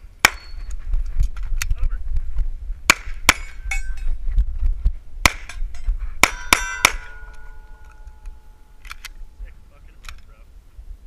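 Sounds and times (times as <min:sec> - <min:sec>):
steel plate ringing: 0:00.3 - 0:00.7, 0:03.3 - 0:04.1, 0:05.3 - 0:09.4
steel targets clanging: 0:00.3 - 0:00.7, 0:02.9 - 0:04.1, 0:05.3 - 0:08.8
pistol shots: 0:05.2 - 0:05.6, 0:06.2 - 0:07.6.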